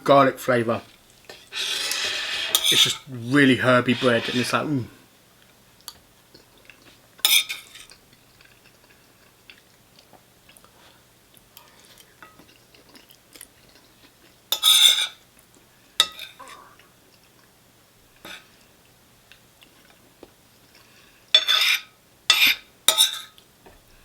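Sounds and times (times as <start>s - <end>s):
cutlery scraping a dish: 1.3s - 4.7s, 7.2s - 7.9s, 14.5s - 15.2s, 16.0s - 16.5s, 21.4s - 23.4s.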